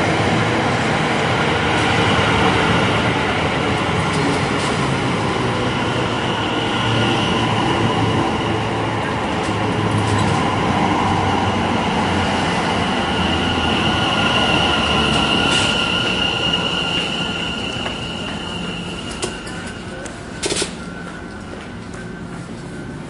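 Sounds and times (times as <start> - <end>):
train rumbling on rails: 0.0 - 23.0
high-pitched wheel squeal: 12.8 - 20.0.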